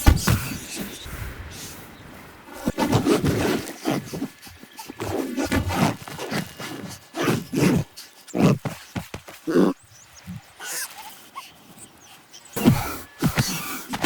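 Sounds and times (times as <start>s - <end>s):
animal cries: 9.5s - 13.8s.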